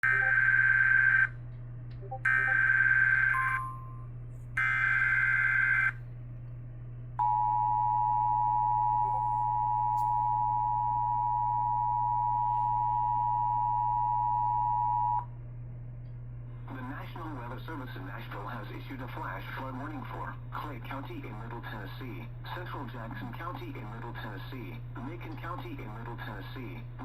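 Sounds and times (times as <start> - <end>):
warbling digital data tones: 0.0 - 1.2
steady dual tone: 0.0 - 1.4, 7.2 - 15.4.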